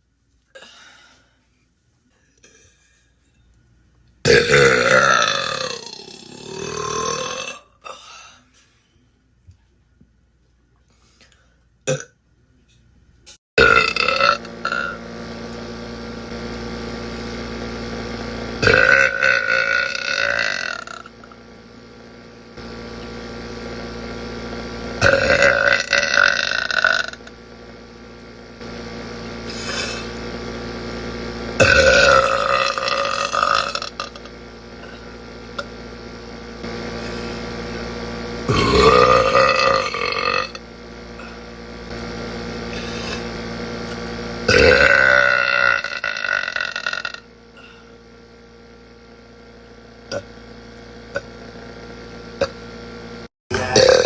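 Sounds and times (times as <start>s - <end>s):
steady background hum: 0.0s - 54.0s
woman burping: 4.3s - 8.1s, 11.8s - 12.2s, 53.5s - 54.0s.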